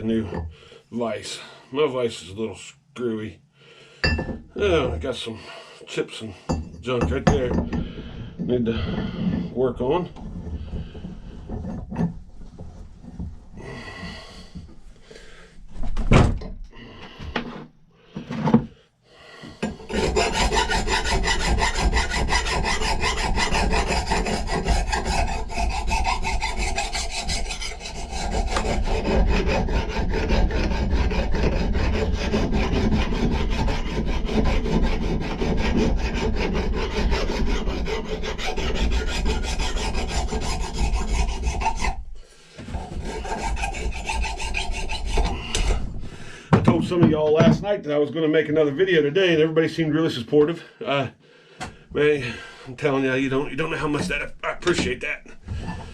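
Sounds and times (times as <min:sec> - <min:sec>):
knocks and handling sounds: 0:04.0 - 0:05.0, 0:06.5 - 0:13.6
hand file rasping on steel: 0:06.4 - 0:14.6, 0:19.4 - 0:46.4, 0:52.8 - 0:55.9.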